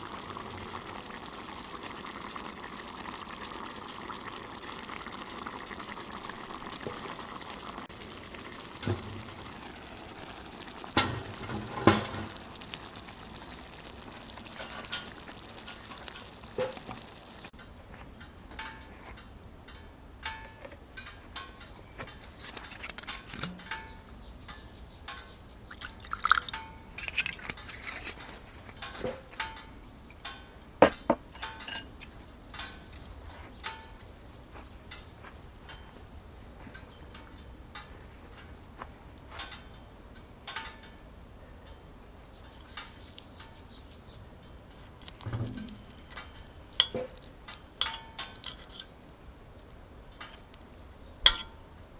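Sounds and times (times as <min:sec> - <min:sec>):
liquid simmering in a pan: 0:00.0 - 0:38.6, 0:39.2 - 0:51.7
utensils clinking on dishes: 0:18.5 - 0:34.1, 0:45.4 - 0:49.0, 0:51.3 - 0:51.6.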